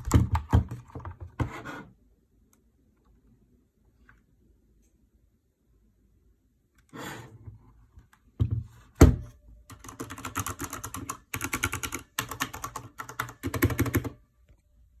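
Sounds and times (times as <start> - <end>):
mechanical keyboard typing: 9.7 - 14.2.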